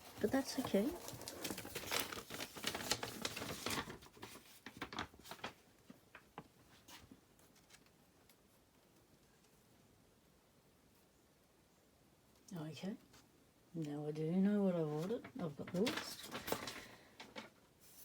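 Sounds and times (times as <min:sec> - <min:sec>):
packaging rustling and crinkling: 0:00.0 - 0:08.0, 0:14.9 - 0:18.0.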